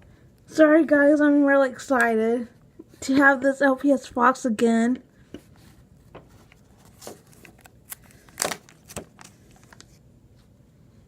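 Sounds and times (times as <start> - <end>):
plastic packaging clicks and rustles: 6.4 - 10.0.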